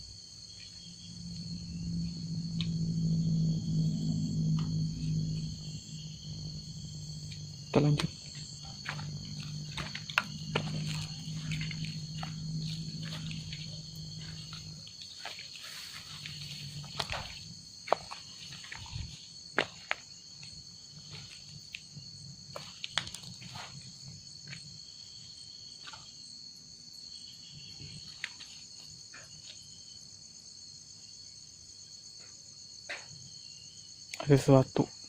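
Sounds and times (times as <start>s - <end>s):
insects trilling: 0.0s - 35.0s.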